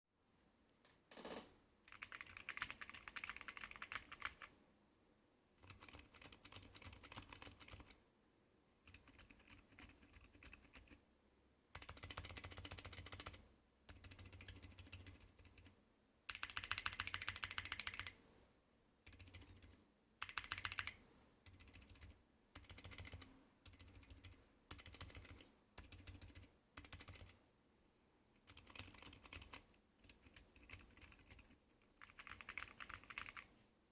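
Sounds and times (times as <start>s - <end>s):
mechanical keyboard typing: 1.9s - 4.5s, 5.6s - 8.0s, 8.8s - 11.0s, 11.7s - 15.7s, 16.3s - 18.2s, 19.0s - 27.4s, 28.4s - 33.5s.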